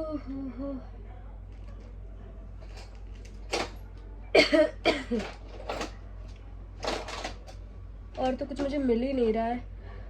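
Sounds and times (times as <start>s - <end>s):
woman coughing: 4.3s - 5.3s.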